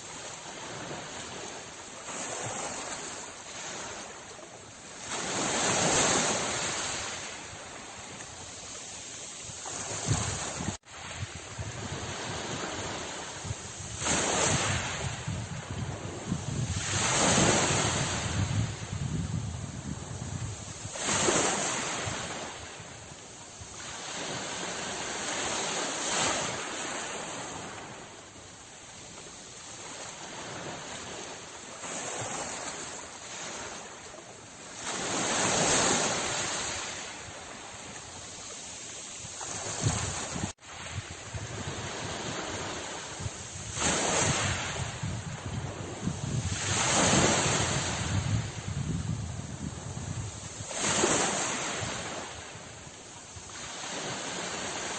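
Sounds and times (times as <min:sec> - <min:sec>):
sea waves breaking: 0:00.0 - 0:54.9.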